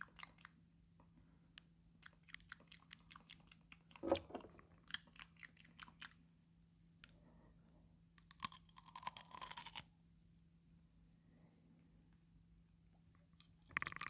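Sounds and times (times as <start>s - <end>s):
cucumber being chewed: 2.0s - 6.2s, 8.2s - 9.9s.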